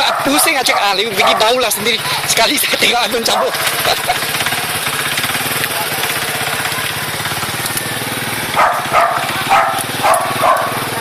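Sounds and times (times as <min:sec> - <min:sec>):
dog barking: 0:00.0 - 0:01.6, 0:03.2 - 0:03.7, 0:08.5 - 0:10.9
small engine running: 0:00.0 - 0:11.0.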